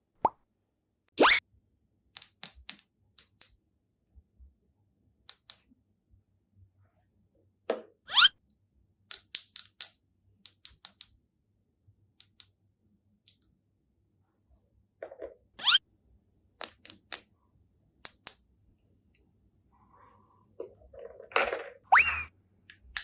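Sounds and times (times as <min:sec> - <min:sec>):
packaging clicks and snips: 0:02.2 - 0:03.6, 0:05.3 - 0:05.6, 0:09.1 - 0:11.1, 0:12.2 - 0:12.5, 0:16.6 - 0:17.3, 0:18.0 - 0:18.4, 0:22.7 - 0:23.0
rising bloop sound effect: 0:21.9 - 0:22.3.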